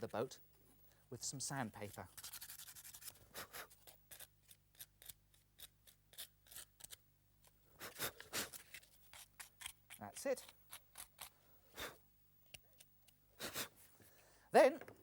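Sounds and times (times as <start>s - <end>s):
sandpaper rubbing: 1.8s - 7.0s.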